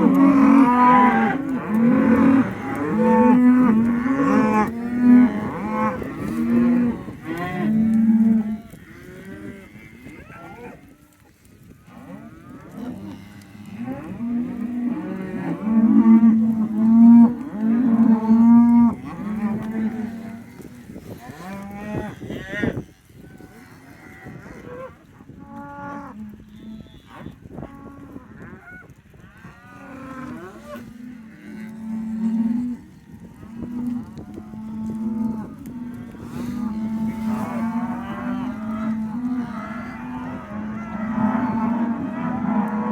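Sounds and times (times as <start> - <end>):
cattle mooing: 0.0 - 11.1, 11.9 - 28.6, 29.4 - 42.9.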